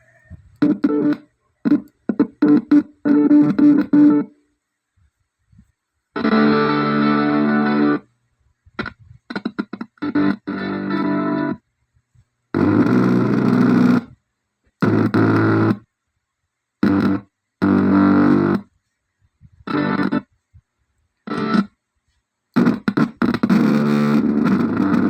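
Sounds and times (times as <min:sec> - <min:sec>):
distorted electric guitar music: 0:00.6 - 0:04.3, 0:06.2 - 0:08.1, 0:08.8 - 0:11.6, 0:12.6 - 0:14.2, 0:14.8 - 0:15.8, 0:16.8 - 0:18.7, 0:19.7 - 0:20.3, 0:21.3 - 0:21.7, 0:22.6 - 0:25.0.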